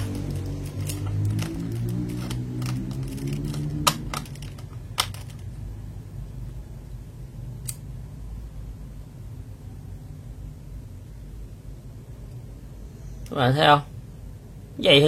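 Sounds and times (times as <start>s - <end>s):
small mechanical clicks: 0.0s - 5.5s
low hum: 0.0s - 13.3s.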